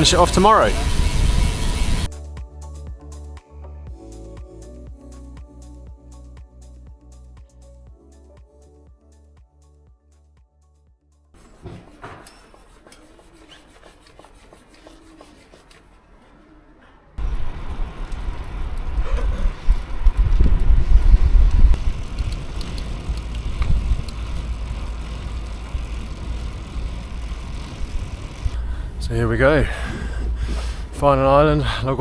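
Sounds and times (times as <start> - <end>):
wind buffeting microphone: 0.0 - 2.1, 17.2 - 31.0
faint rubbing and clicks: 11.9 - 16.4.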